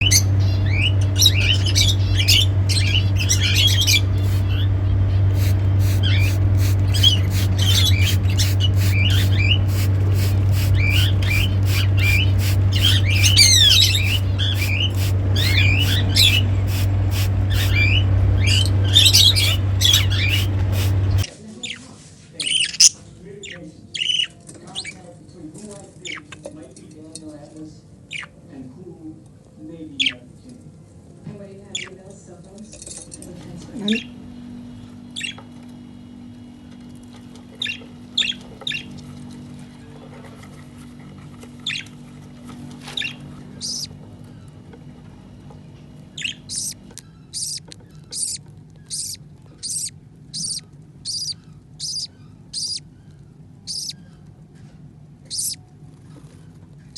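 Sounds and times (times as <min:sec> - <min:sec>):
budgerigar chirping: 0:00.0 - 0:21.2, 0:43.0 - 0:43.9, 0:46.2 - 0:52.8, 0:53.7 - 0:54.0, 0:55.3 - 0:55.6
low hum: 0:00.0 - 0:21.2.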